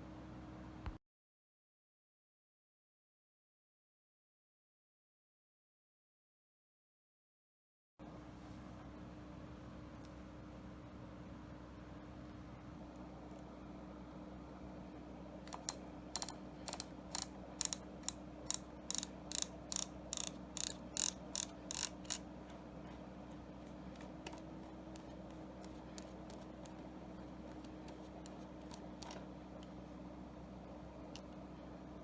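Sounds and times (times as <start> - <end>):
low steady hum: 8.0 - 32.0
ratchet-like mechanical clicking: 15.5 - 22.2.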